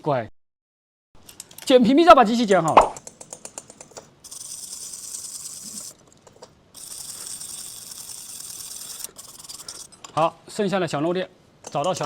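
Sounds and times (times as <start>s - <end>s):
small hand tool high-pitched hiss: 4.2s - 6.0s, 6.8s - 9.9s.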